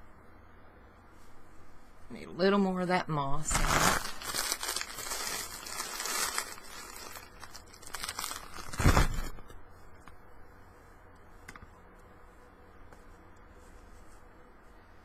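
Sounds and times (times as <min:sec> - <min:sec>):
dry moss crackling and rustling: 0:03.4 - 0:09.2.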